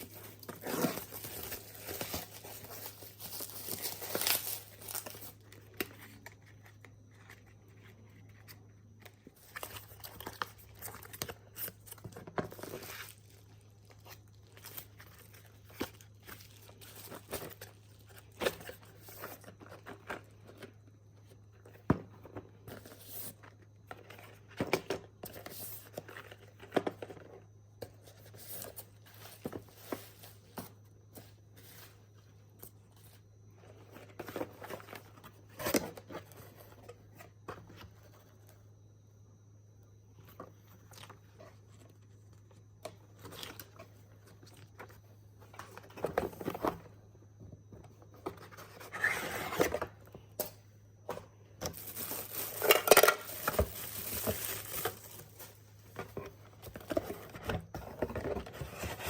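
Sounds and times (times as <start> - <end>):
packaging rustling and tearing: 0.0 - 5.6, 51.6 - 55.6.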